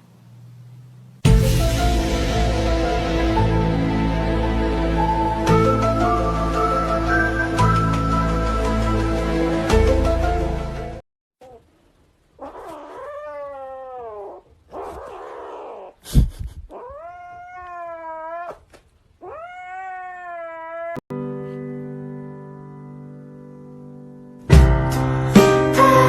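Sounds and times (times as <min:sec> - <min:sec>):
sharp knock: 0:01.2 - 0:04.2
background music: 0:01.3 - 0:11.0, 0:21.2 - 0:26.0
cat yowling: 0:12.4 - 0:16.0, 0:16.7 - 0:21.0.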